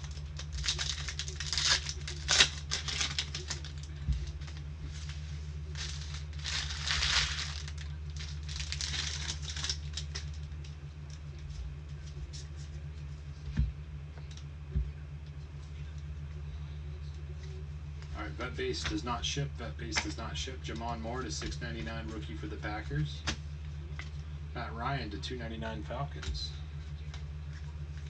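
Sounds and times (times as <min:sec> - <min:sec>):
card pack wrappers crinkling: 0:00.0 - 0:10.8
low electrical hum: 0:00.0 - 0:28.0.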